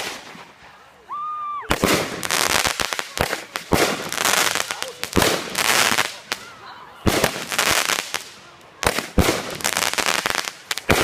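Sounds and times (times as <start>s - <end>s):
firework bangs: 0.0s - 0.6s, 1.7s - 11.0s
firework crackling hiss: 1.7s - 6.5s, 7.1s - 11.0s.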